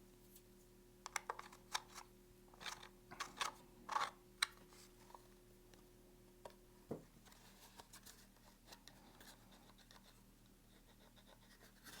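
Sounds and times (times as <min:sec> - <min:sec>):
faint scratching and clicks: 0:07.2 - 0:12.0.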